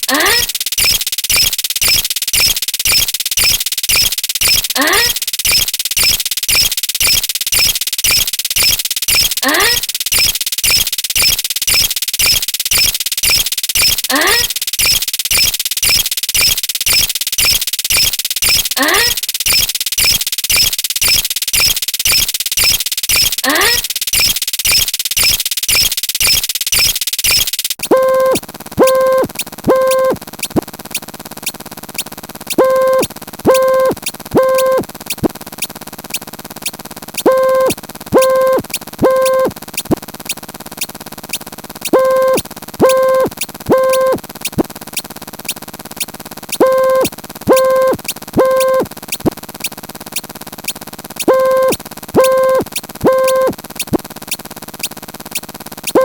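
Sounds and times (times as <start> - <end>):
short electronic beeps: 0.0 - 30.6, 32.5 - 35.3, 37.2 - 40.0, 41.9 - 44.6, 46.6 - 49.3, 51.2 - 54.0
dense pulsing electronic noise: 0.0 - 41.0, 41.8 - 56.0
steady hiss with rapid ticking: 0.5 - 56.0.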